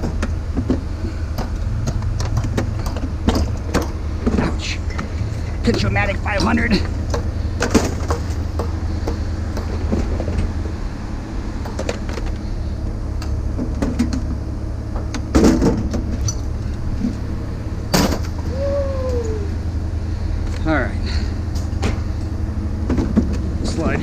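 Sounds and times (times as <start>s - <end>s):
knocks and clunks: 0.0s - 10.8s, 13.2s - 17.2s, 17.9s - 18.4s, 22.8s - 24.0s
vehicle engine running: 0.0s - 24.0s.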